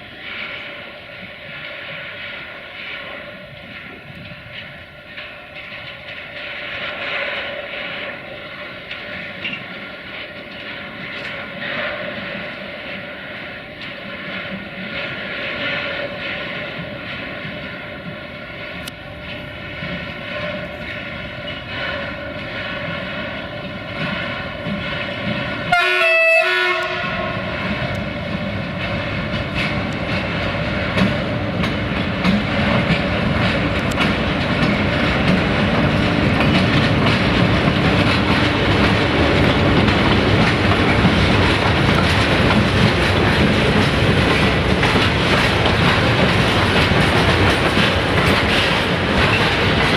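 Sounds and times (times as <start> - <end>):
electric locomotive whine: 0.0 - 49.9
train wheels clickety-clack: 0.0 - 49.9
train horn blast: 25.7 - 27.5.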